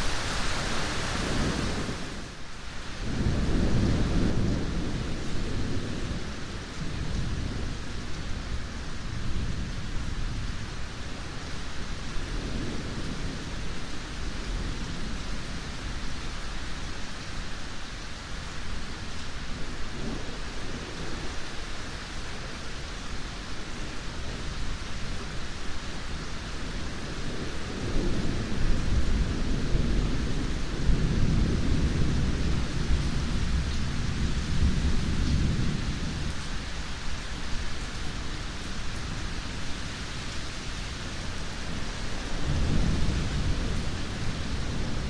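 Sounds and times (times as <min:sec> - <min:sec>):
steady rain: 0:00.0 - 0:45.0
rolling thunder: 0:03.0 - 0:07.8, 0:41.7 - 0:45.0.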